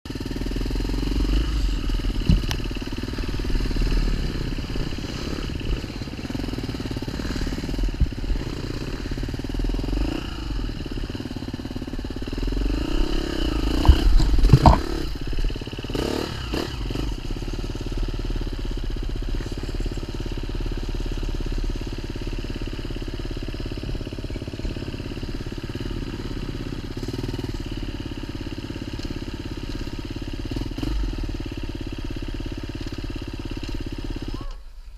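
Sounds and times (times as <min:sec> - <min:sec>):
motorcycle engine running: 0:00.1 - 0:34.7
sharp knocks and clatter: 0:02.2 - 0:02.8, 0:13.7 - 0:15.6.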